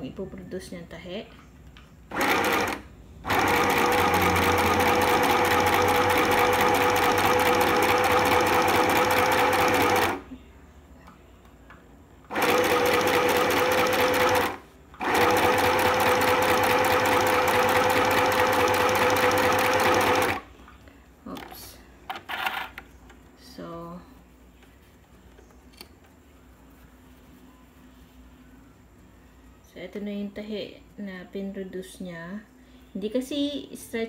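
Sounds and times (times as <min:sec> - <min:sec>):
sewing machine motor whine: 0:02.1 - 0:10.2, 0:12.3 - 0:20.4.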